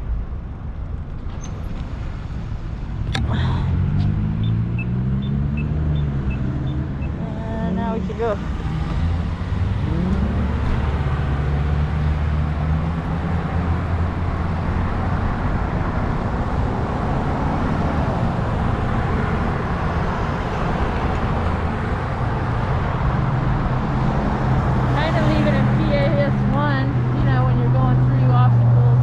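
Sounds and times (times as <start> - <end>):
low riding hum: 0.0 - 29.0
road traffic: 0.0 - 29.0.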